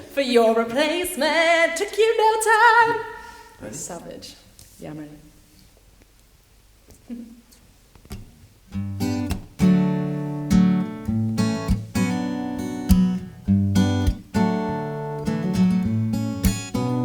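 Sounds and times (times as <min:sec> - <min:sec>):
acoustic guitar strummed chords: 0:08.7 - 0:17.0.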